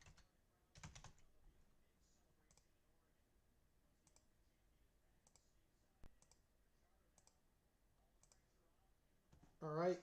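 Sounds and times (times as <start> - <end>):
computer mouse clicks: 4.0 - 4.3, 5.2 - 6.4, 7.2 - 7.4, 8.2 - 8.4.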